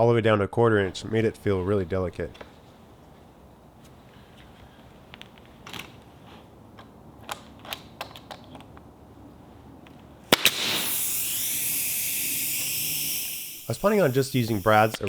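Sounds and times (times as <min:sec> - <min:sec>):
compressed air hissing: 0:00.8 - 0:08.0, 0:08.9 - 0:15.0
wood pieces clicking: 0:04.4 - 0:08.9
brad nailer shots: 0:10.2 - 0:15.0.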